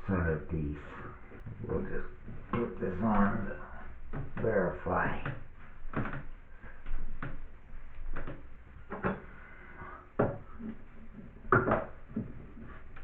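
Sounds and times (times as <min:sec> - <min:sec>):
bathtub tap clacking and knocking: 0:04.1 - 0:06.3, 0:08.1 - 0:09.3, 0:10.2 - 0:10.5, 0:11.5 - 0:12.4.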